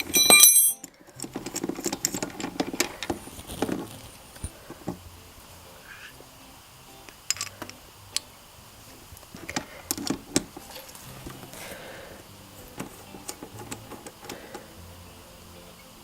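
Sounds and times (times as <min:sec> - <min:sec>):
chain tool clicks and knocks: 0:00.0 - 0:02.9.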